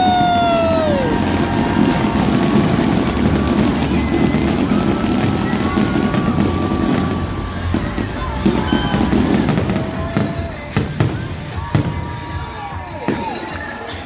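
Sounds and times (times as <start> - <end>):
fireworks bangs: 0.0 - 13.9
crowd noise: 0.0 - 14.0
music: 0.0 - 14.0.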